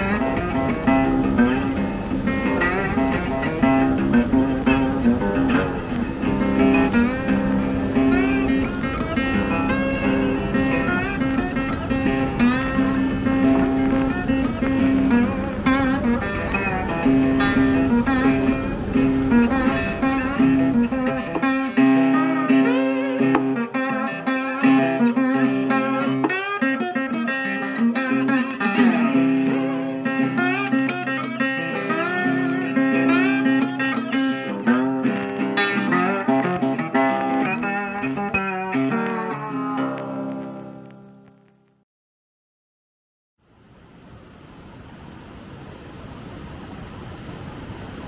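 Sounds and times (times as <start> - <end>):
steady hiss: 0.0 - 26.4, 43.5 - 48.0
guitar picking melody: 0.0 - 41.5.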